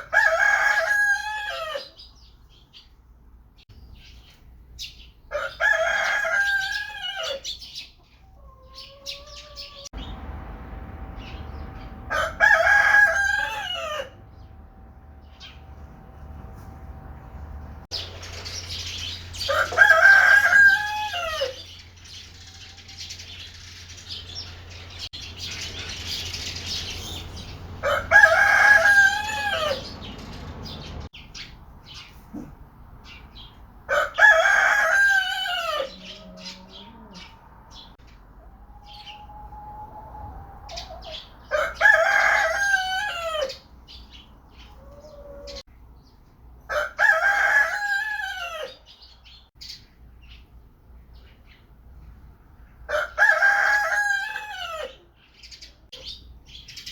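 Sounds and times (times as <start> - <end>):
rooster crowing: 0.0 - 2.0, 5.3 - 7.5, 8.4 - 17.9, 19.4 - 21.7, 27.8 - 30.1, 33.9 - 37.9, 38.6 - 43.6, 46.7 - 48.8, 52.9 - 55.1.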